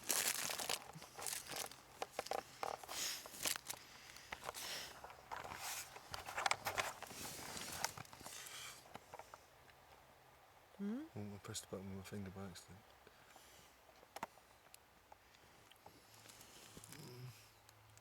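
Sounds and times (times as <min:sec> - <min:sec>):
rustling and crinkling: 0:00.0 - 0:09.4, 0:15.2 - 0:17.1.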